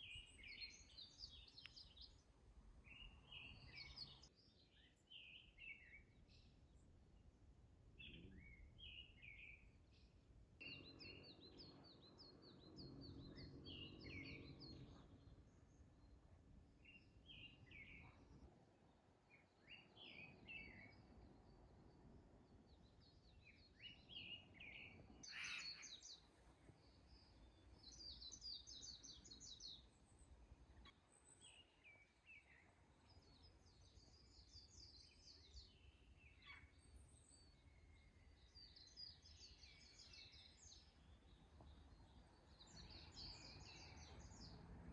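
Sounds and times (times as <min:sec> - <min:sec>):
birds chirping and trilling: 0:00.0 - 0:06.5, 0:08.0 - 0:18.5, 0:19.3 - 0:44.6.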